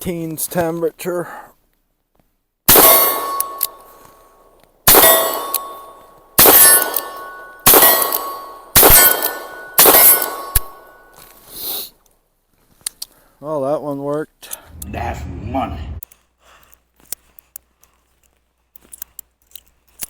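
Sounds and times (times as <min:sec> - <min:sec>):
metallic ringing: 0:05.3 - 0:11.2.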